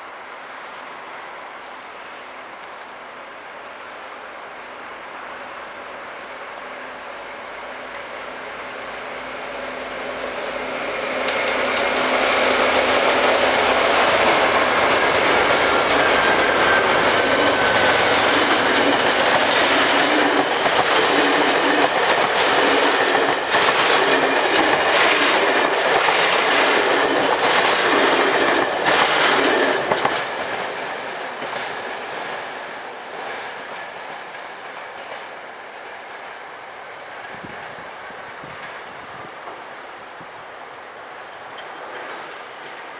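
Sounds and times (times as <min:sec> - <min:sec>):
freight train passing: 0:00.0 - 0:42.9
wheels clicking over rail joints: 0:11.2 - 0:35.4, 0:41.2 - 0:42.9.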